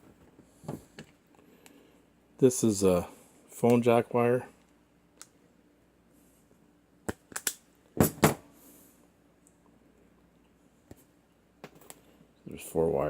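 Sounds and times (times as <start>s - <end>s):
wire stripper clicks and snaps: 7.1s - 7.6s.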